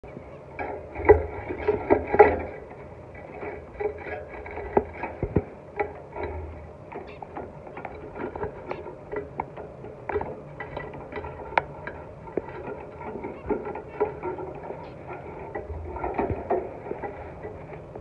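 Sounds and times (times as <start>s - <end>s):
finch chirps: 7.0s - 7.4s, 13.2s - 15.1s.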